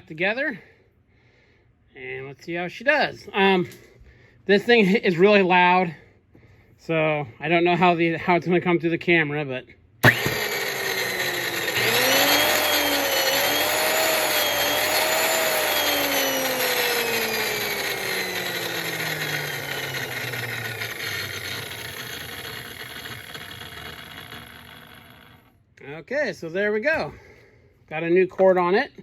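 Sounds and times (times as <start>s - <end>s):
electric disc sander whining: 10.0s - 25.6s.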